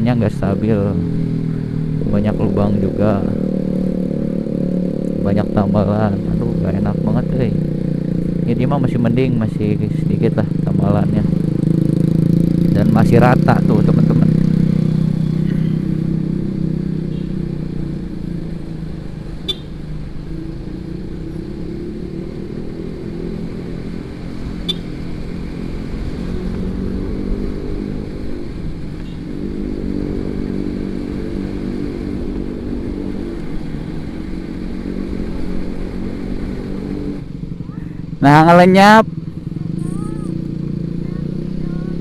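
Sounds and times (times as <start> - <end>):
motorcycle engine cruising: 0.0 - 42.0
wind and road noise: 0.0 - 42.0.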